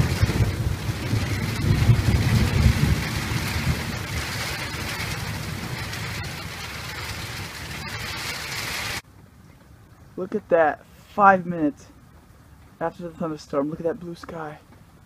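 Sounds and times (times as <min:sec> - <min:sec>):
heavy rain pouring: 0:00.0 - 0:09.0
low rumble of thunder: 0:00.0 - 0:09.0.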